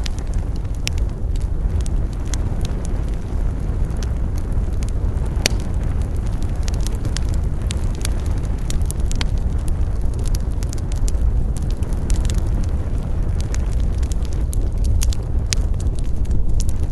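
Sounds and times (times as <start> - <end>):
campfire crackling and popping: 0.0 - 16.9.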